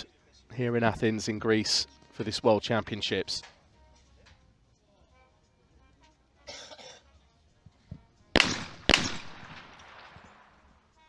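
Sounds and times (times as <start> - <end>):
shotgun shots echoing: 8.4 - 10.8.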